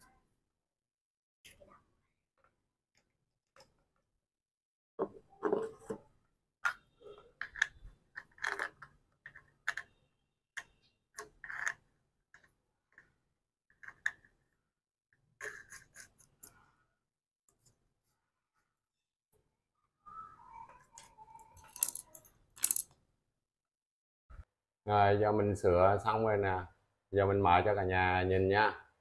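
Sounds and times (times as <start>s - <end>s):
plastic parts clicking and rattling: 6.6s - 10.0s, 21.0s - 23.0s.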